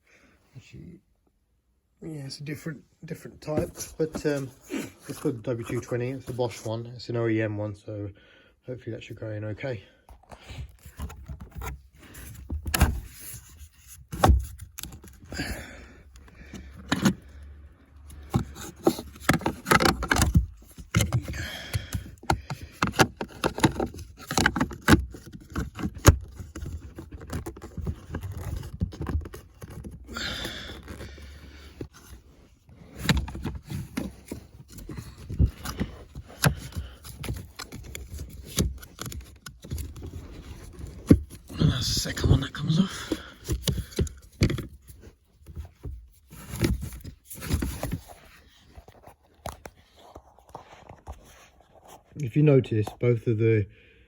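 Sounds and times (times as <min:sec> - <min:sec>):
plastic scraping: 0:03.4 - 0:06.8, 0:10.2 - 0:52.2
plastic clicks and knocks: 0:18.2 - 0:30.0.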